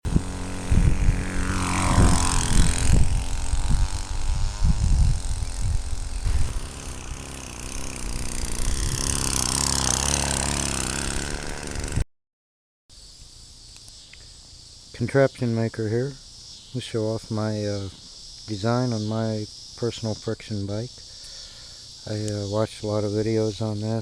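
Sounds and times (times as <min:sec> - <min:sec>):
low rumbling thumps: 0:00.0 - 0:09.4
small two-stroke engine running: 0:00.0 - 0:12.0.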